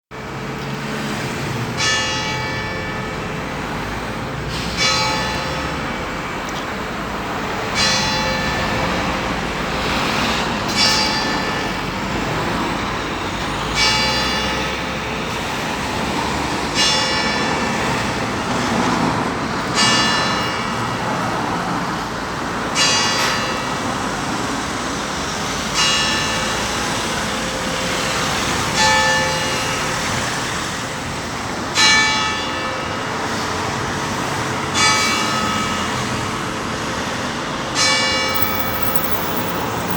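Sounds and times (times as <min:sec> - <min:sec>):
church bell tolling: 0:01.8 - 0:06.3.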